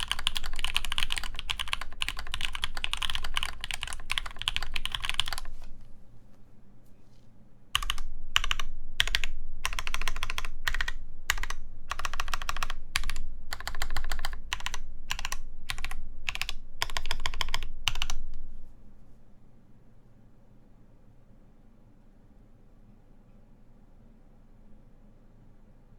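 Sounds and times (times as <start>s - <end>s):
typing on mechanical keyboard: 0.0s - 5.8s, 7.8s - 18.2s.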